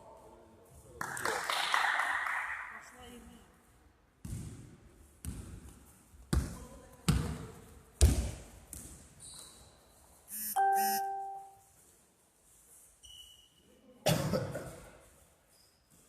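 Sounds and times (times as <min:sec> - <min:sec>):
basketball bouncing on floor: 0:04.2 - 0:07.4, 0:08.0 - 0:09.0
two-note electronic chime: 0:10.4 - 0:11.6.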